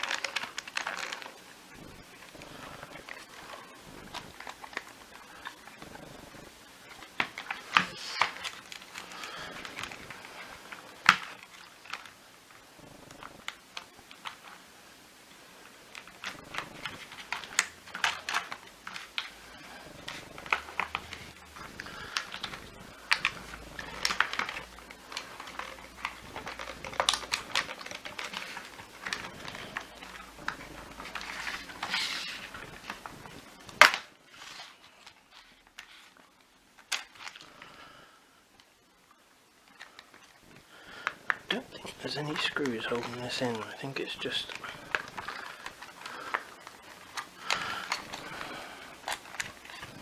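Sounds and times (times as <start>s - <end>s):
plastic parts clicking: 0.0s - 5.9s, 15.9s - 36.2s, 36.8s - 37.5s, 41.0s - 50.0s.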